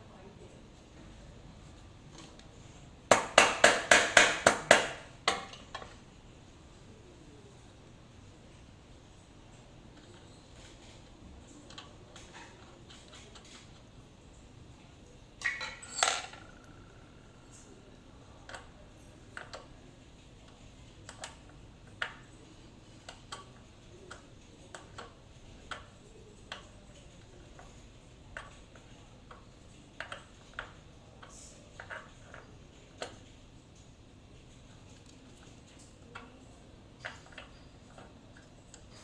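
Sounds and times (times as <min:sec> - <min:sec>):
metal clinking and tapping: 0:15.4 - 0:17.0
loud ringing metal clink: 0:15.6 - 0:16.7.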